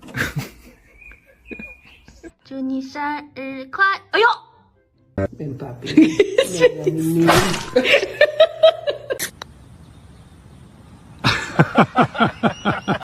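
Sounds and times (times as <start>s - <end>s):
person laughing: 0.0s - 2.3s, 5.9s - 9.3s.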